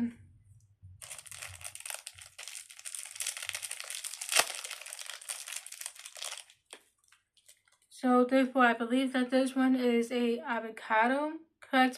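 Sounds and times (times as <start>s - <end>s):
plastic packaging crinkling: 1.0s - 7.9s.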